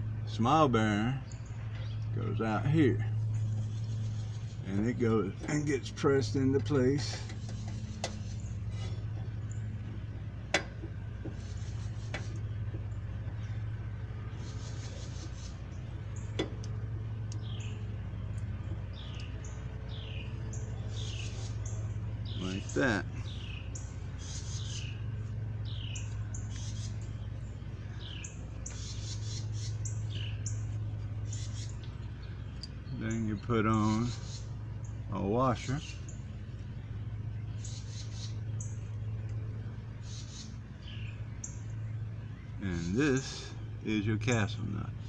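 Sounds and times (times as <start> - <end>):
birds chirping: 0.0 - 45.0
steady low hum: 0.0 - 45.0
sharp metal clicks: 32.5 - 32.8.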